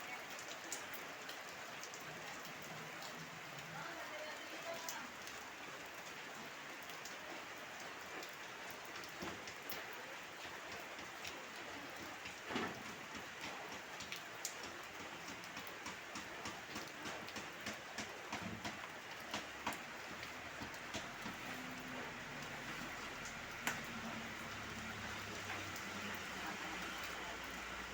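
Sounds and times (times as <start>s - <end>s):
heavy rain falling: 0.0s - 27.9s
raindrops ticking on a surface: 0.0s - 27.9s.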